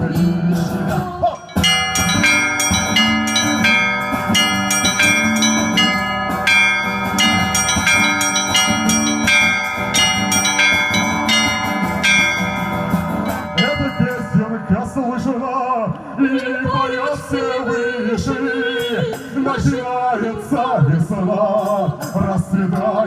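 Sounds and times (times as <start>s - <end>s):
church bells chiming: 1.2s - 15.8s.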